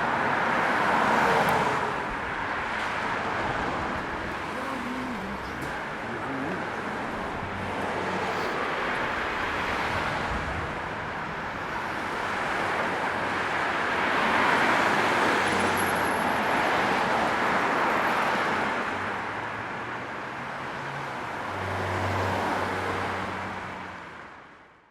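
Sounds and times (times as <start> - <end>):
street traffic noise: 0.0 - 24.9.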